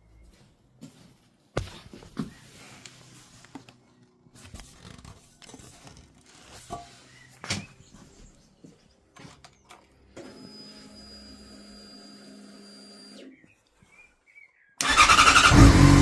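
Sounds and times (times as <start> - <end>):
rustling: 0.9 - 8.4.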